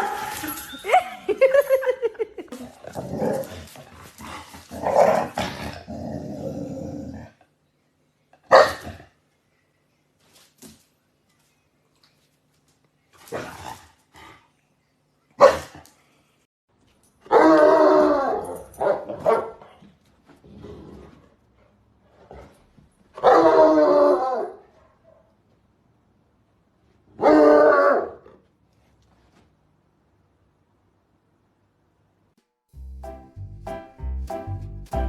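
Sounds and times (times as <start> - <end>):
dog barking: 8.5 - 9.0, 15.4 - 15.8, 17.3 - 19.6.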